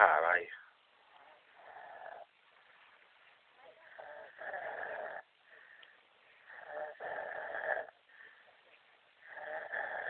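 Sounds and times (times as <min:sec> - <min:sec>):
quiet breathing: 0:00.5 - 0:10.0
man snoring loudly: 0:06.6 - 0:07.9, 0:09.3 - 0:10.0.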